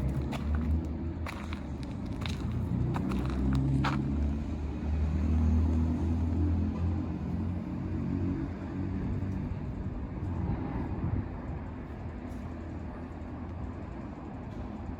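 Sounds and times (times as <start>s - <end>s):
vehicle engine rumble passing: 0.0s - 14.9s
steady background rumble: 8.4s - 14.9s.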